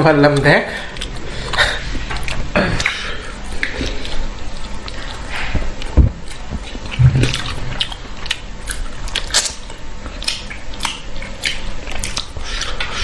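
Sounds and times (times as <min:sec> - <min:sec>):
wet chewing and sucking: 0:00.9 - 0:13.0
low thumps: 0:05.9 - 0:07.8.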